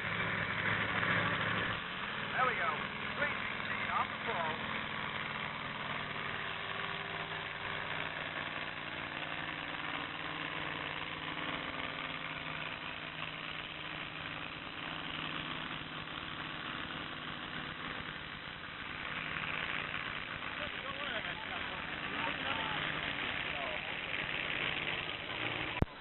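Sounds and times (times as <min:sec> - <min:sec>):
tractor engine running steadily: 0:00.0 - 0:26.0.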